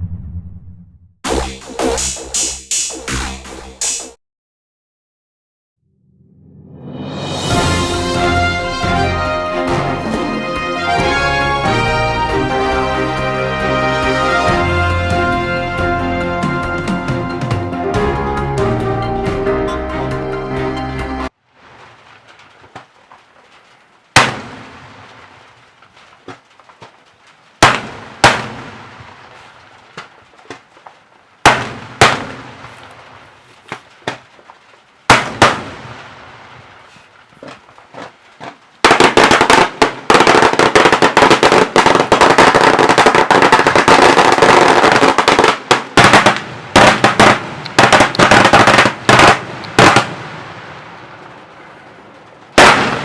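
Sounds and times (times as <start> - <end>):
fireworks bangs with echo: 7.0 - 18.0, 24.1 - 25.5, 27.6 - 30.1, 31.4 - 34.3, 35.1 - 53.0.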